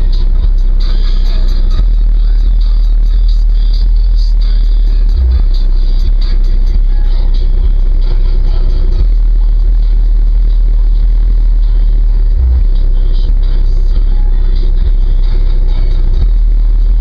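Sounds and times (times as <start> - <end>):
subwoofer deep bass tones: 0.0 - 17.0.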